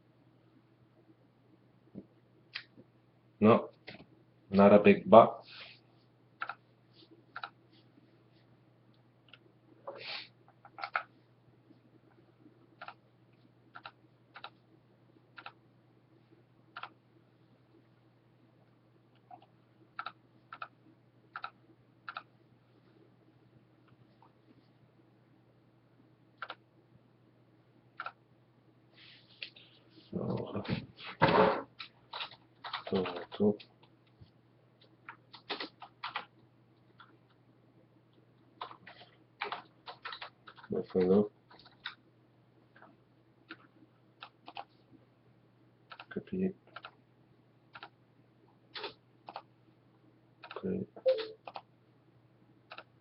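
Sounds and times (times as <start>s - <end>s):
faint low hum: 0.0s - 53.0s
computer keyboard keystrokes: 10.6s - 11.1s, 12.8s - 13.0s, 13.7s - 14.6s, 15.4s - 15.6s, 19.4s - 20.7s, 21.3s - 22.3s, 26.4s - 26.6s, 28.0s - 28.2s, 32.1s - 33.3s, 35.1s - 36.3s, 38.6s - 42.0s, 43.5s - 44.7s, 45.9s - 46.2s, 46.8s - 47.0s, 47.7s - 47.9s, 50.4s - 51.7s, 52.7s - 52.9s.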